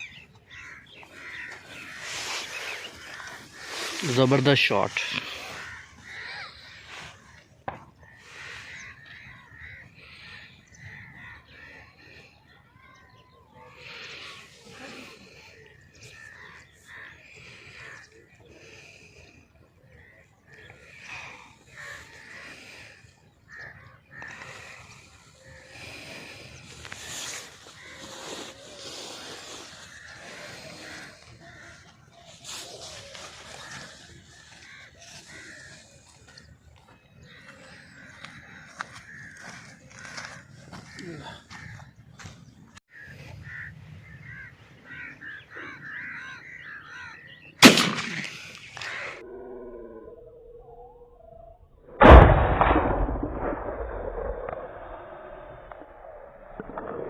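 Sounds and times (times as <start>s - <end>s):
birds calling: 0.0s - 51.4s
shotgun blast with echo: 47.6s - 48.4s, 52.0s - 54.4s.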